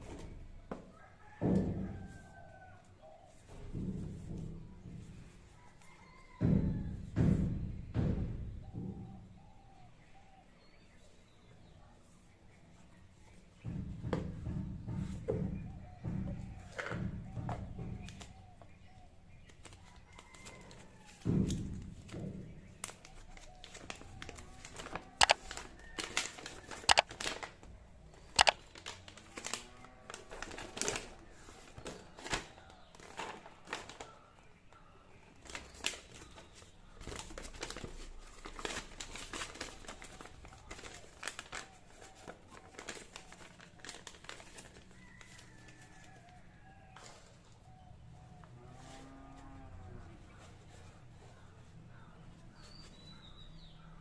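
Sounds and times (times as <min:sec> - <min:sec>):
packaging crinkling and rustling: 0:22.7 - 0:34.2, 0:35.4 - 0:47.3
sharp clicks and taps: 0:25.2 - 0:25.5, 0:26.9 - 0:27.2, 0:28.4 - 0:28.6.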